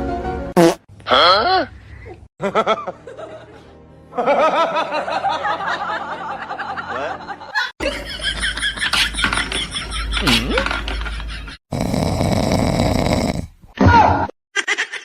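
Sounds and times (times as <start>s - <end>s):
music: 0.0s - 0.6s, 2.4s - 10.1s
people laughing: 2.4s - 11.6s.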